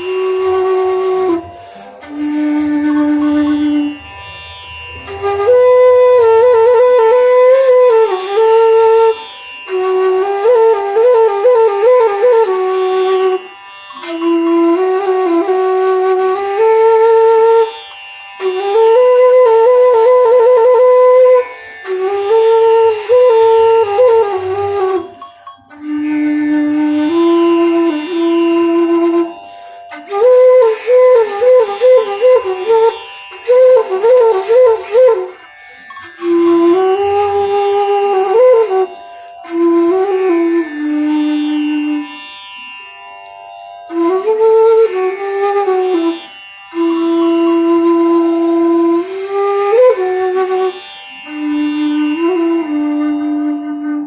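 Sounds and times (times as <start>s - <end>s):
bamboo flute melody: 0.0s - 54.0s
steady drone: 0.1s - 7.3s.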